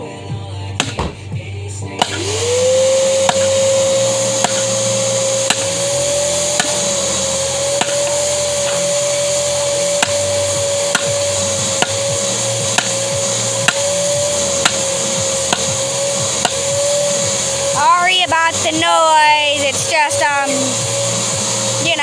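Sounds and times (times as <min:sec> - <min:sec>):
vacuum cleaner whining: 0:01.8 - 0:22.0
hammer striking metal: 0:02.0 - 0:02.2, 0:03.2 - 0:03.6, 0:04.4 - 0:17.1.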